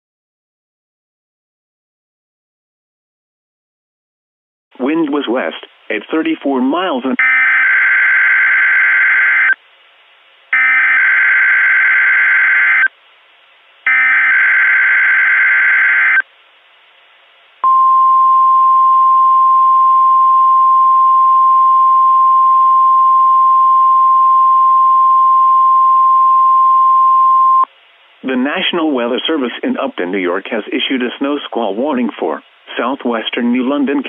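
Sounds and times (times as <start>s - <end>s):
steady single-tone alarm: 7.2s - 9.6s, 10.5s - 12.9s, 13.8s - 16.2s.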